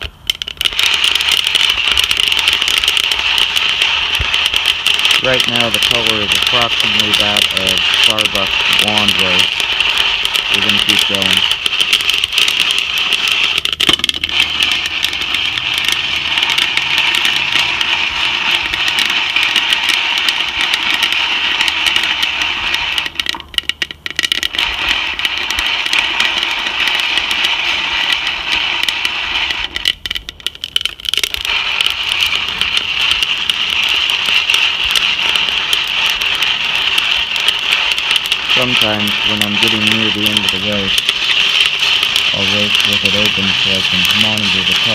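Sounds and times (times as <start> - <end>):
coffee beans crackling: 0.0 - 44.9
coffee beans rattling in popper: 0.0 - 44.9.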